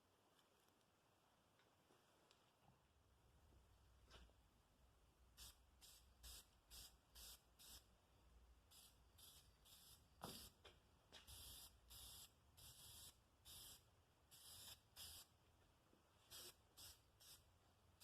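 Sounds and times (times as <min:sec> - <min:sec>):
spray can hissing: 0:05.4 - 0:07.9, 0:11.2 - 0:15.3, 0:16.3 - 0:17.4.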